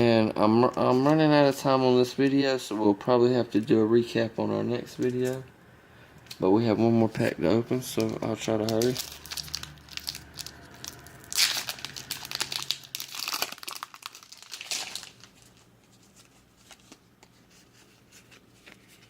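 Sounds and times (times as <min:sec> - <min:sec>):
wrapper crinkling: 0:07.2 - 0:19.0
foil pack tearing: 0:07.9 - 0:15.4.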